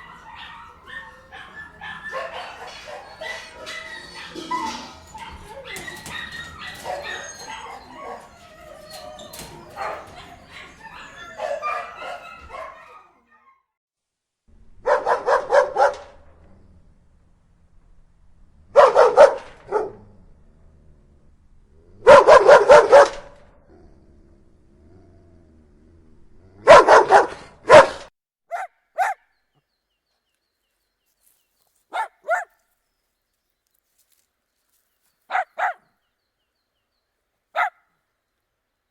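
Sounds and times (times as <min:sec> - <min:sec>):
dog barking loudly: 0:00.0 - 0:13.2, 0:14.8 - 0:16.1, 0:18.8 - 0:20.0, 0:22.0 - 0:23.3, 0:26.6 - 0:29.2, 0:31.9 - 0:32.6, 0:35.3 - 0:35.9, 0:37.6 - 0:37.8.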